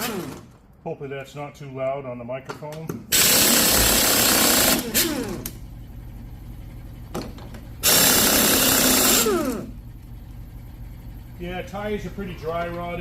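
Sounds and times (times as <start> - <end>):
steady low hum: 0.1 - 13.0
power tool motor whining: 3.1 - 5.6, 7.8 - 9.8.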